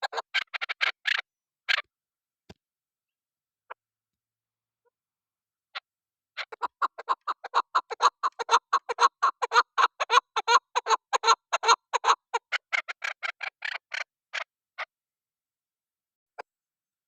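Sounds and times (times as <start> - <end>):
partridge clucking calls: 0.0 - 1.9, 5.7 - 14.9.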